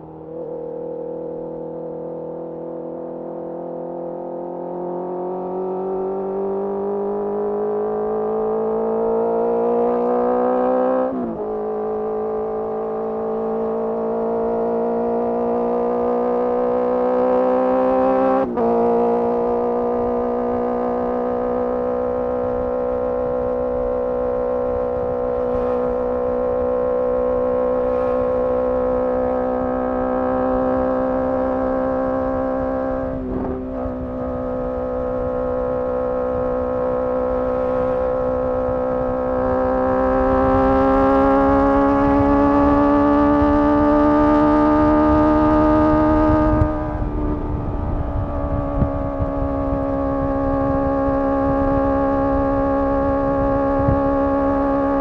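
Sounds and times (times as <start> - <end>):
motorcycle engine accelerating: 0.0 - 55.0
wind rushing: 32.6 - 54.7.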